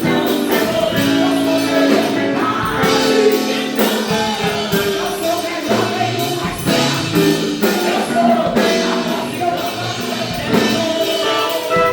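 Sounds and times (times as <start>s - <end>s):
gospel voices singing: 0.0s - 11.9s
instrumental backing with beat: 0.0s - 11.9s.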